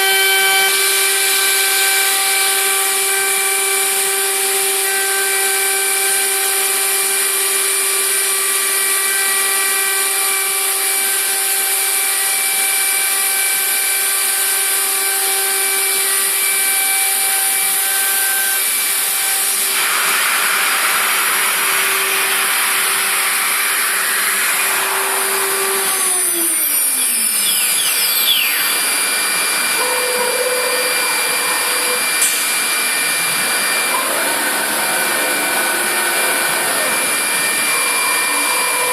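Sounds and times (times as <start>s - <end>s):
router cutting noise: 0.0s - 38.9s
router spindle whine: 0.0s - 38.9s
rushing hiss of air: 19.6s - 23.8s, 32.1s - 33.2s.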